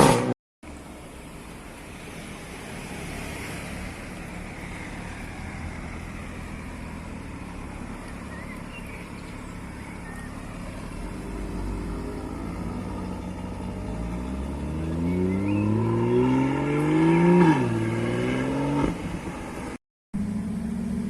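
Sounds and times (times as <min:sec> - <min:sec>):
engine revving: 0:00.0 - 0:00.4, 0:10.1 - 0:19.3
low engine rumble: 0:00.6 - 0:15.9, 0:19.1 - 0:21.0
car passing by: 0:01.8 - 0:08.8, 0:10.0 - 0:19.8.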